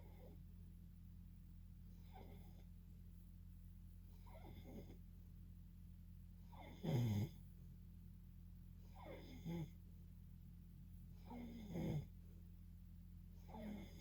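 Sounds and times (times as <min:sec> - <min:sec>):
person snoring: 0:11.2 - 0:12.1, 0:13.4 - 0:14.0.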